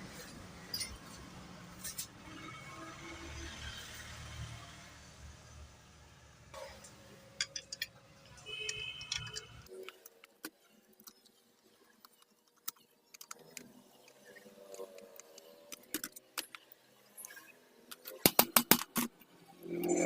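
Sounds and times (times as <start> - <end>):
small metal clicks and taps: 7.4 - 16.6.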